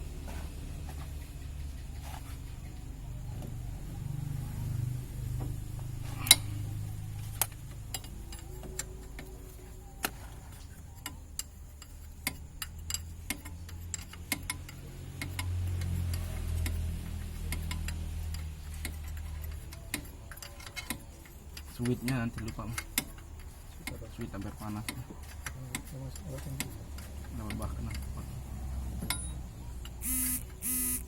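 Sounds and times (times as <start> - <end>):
metal tools clicking: 7.3 - 10.2, 11.0 - 28.1.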